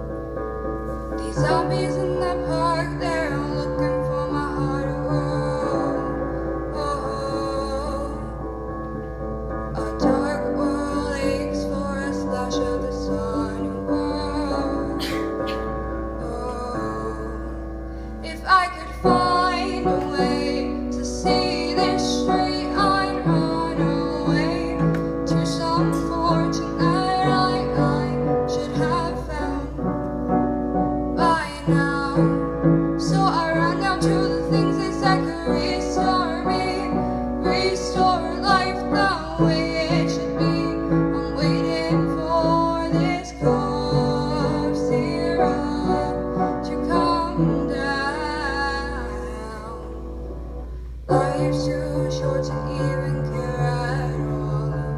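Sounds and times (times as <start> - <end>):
piano chords: 0.0 - 54.9.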